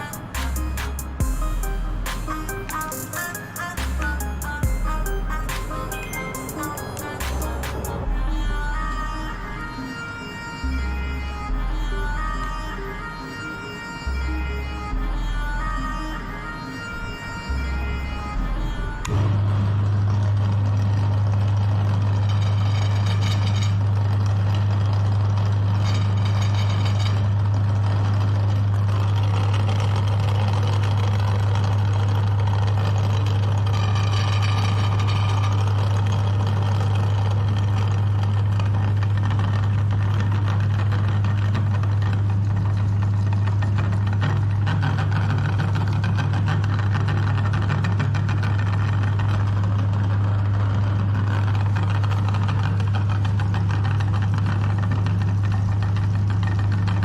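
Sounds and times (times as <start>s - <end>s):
grinding and churning: 0.0s - 57.0s
meat grinder motor humming: 18.3s - 57.0s.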